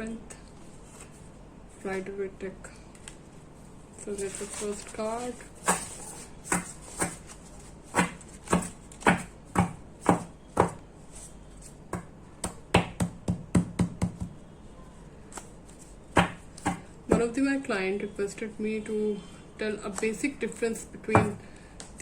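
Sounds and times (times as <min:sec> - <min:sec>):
cards tapping on hard surface: 0:06.5 - 0:07.2, 0:07.9 - 0:10.8.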